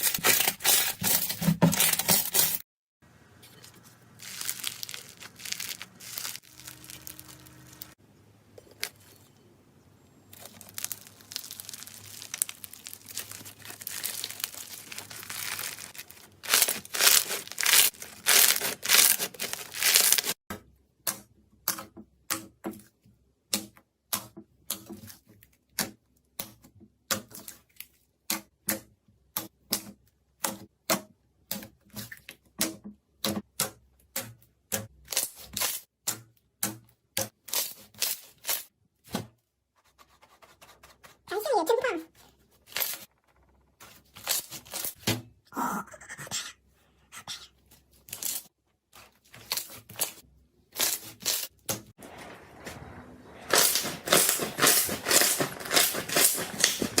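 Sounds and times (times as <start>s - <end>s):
slime crackling and squishing: 3.5s - 8.0s, 10.3s - 20.4s, 48.0s - 57.0s.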